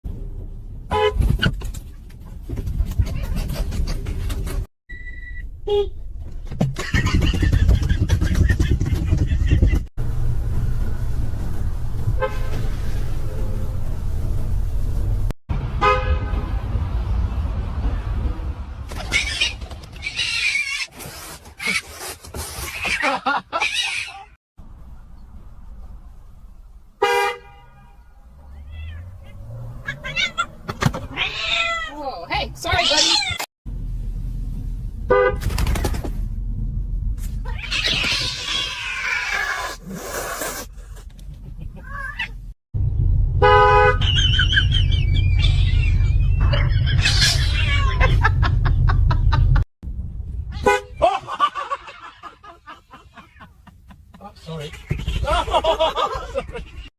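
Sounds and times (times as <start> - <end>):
car horn toot: 0.9 - 1.3, 12.2 - 12.7, 15.8 - 16.5, 27.0 - 28.2, 35.1 - 35.4, 43.4 - 44.0, 50.6 - 51.0
cats meowing and yowling: 19.0 - 21.0, 28.4 - 32.0, 37.4 - 39.8, 41.8 - 42.4, 44.2 - 48.3
low rumble with rapid ticking: 33.7 - 37.2, 42.4 - 47.1.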